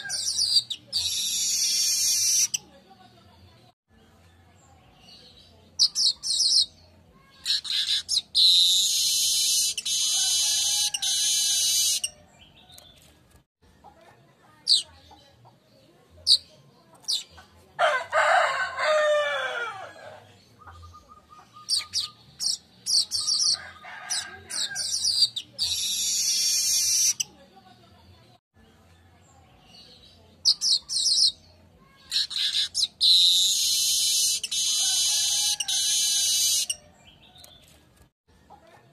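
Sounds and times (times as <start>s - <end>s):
bird chirping and buzzy trill: 0.0s - 13.1s, 20.4s - 37.8s
rooster crowing: 10.0s - 11.6s, 17.8s - 20.2s, 23.6s - 24.8s, 34.7s - 36.1s.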